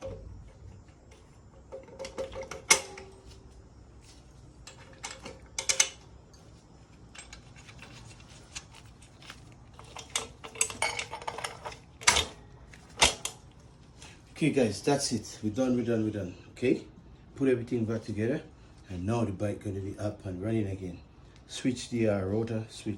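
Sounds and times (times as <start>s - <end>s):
metal hand tools clanking: 9.8s - 12.4s.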